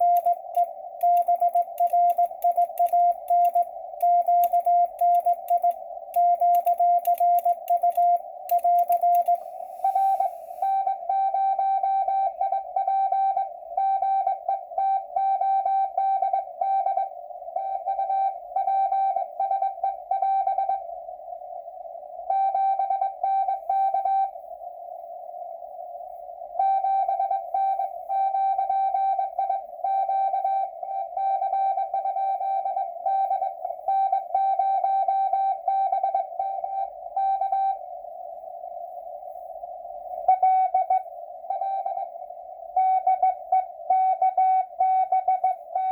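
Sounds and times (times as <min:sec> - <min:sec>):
morse code tone: 0:00.0 - 0:13.4, 0:42.8 - 0:45.9
radio receiver hiss: 0:07.4 - 0:11.0.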